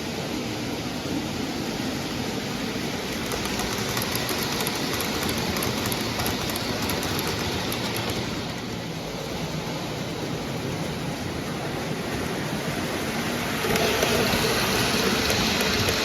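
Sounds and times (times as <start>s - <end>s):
model train running: 0.0s - 16.0s
wheels clicking over rail joints: 3.1s - 8.8s, 12.1s - 16.0s.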